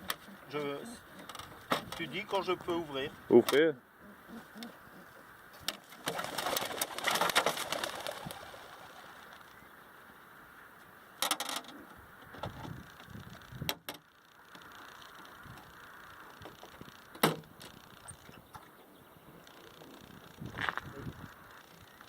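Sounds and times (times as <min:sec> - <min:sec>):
pigeon wings clattering: 0:05.6 - 0:09.6.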